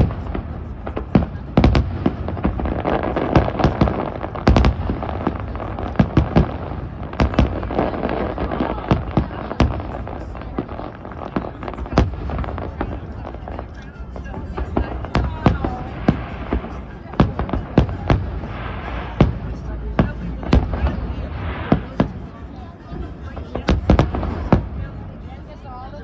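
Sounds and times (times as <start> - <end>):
firework shells booming: 0.0 - 13.3
continuous firework crackle: 0.0 - 26.0.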